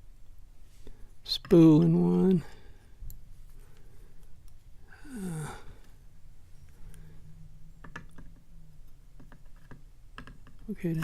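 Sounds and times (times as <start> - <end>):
man sighing: 4.8 - 6.0.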